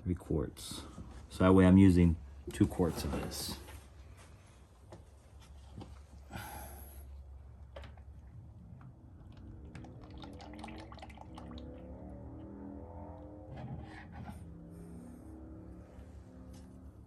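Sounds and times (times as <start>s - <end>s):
oil pouring into funnel: 7.6s - 12.4s
faint drips and clicks: 7.7s - 11.9s.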